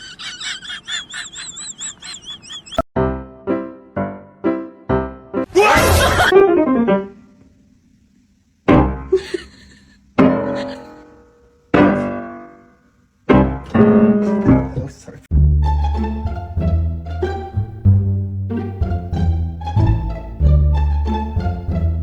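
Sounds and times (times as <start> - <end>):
piano chords ringing: 3.0 - 5.5, 6.3 - 7.3, 10.2 - 22.0.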